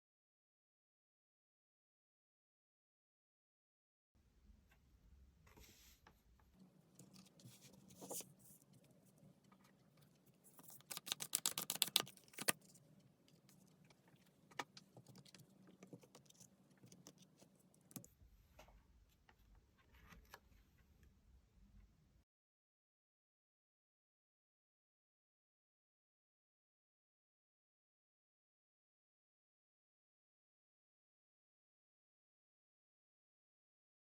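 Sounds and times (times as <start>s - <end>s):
cards shuffling: 10.5s - 12.7s
cards tapping and clicking: 10.6s - 12.6s.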